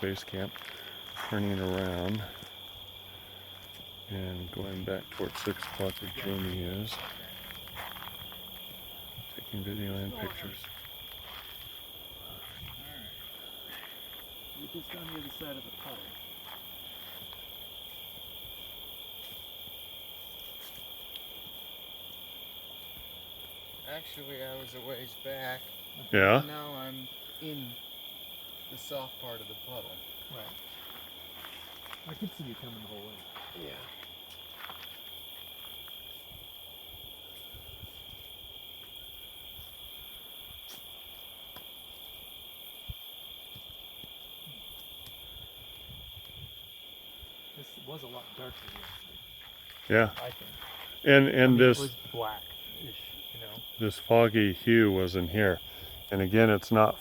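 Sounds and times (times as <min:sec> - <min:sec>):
crickets chirping: 0:00.0 - 0:57.0
wind rumble on microphone: 0:45.2 - 0:46.7.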